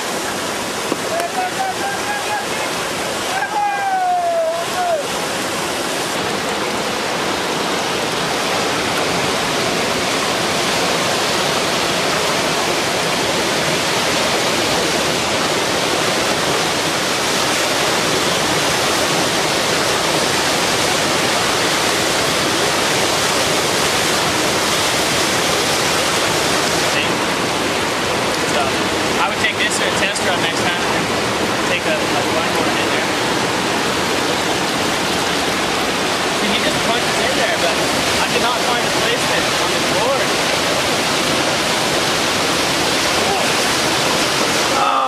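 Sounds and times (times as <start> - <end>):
river water rushing: 0.0 - 45.0.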